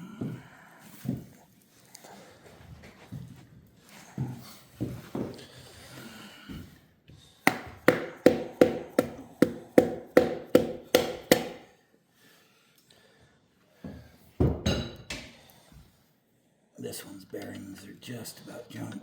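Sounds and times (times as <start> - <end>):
knocks: 7.5 - 11.6
hammer tapping on metal: 7.5 - 11.7.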